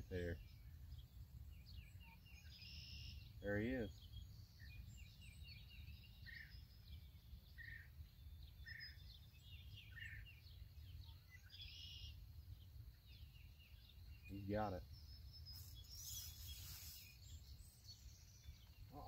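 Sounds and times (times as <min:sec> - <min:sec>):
birds chirping and calling: 0:00.0 - 0:19.0
buzzy bird call: 0:15.4 - 0:17.5.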